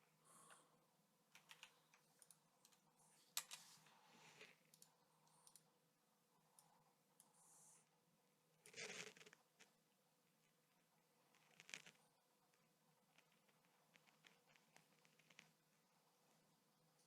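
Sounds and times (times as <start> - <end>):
computer mouse clicks: 4.6 - 5.7.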